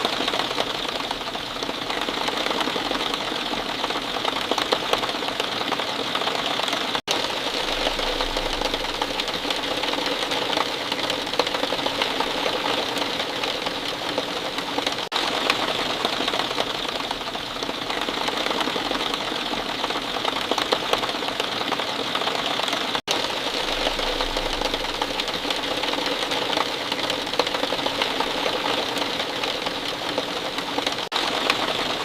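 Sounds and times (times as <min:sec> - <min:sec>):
steady rain falling: 0:00.0 - 0:32.0.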